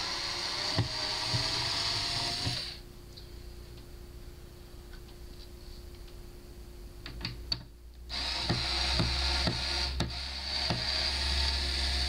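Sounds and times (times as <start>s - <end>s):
power screwdriver running: 8.1s - 12.0s.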